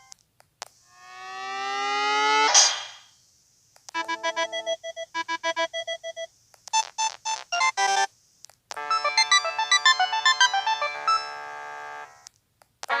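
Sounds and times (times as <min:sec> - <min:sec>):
multi-voice ringtone melody: 0:04.0 - 0:05.8, 0:08.9 - 0:12.2
phone beeping melody: 0:04.0 - 0:08.1, 0:08.9 - 0:12.2.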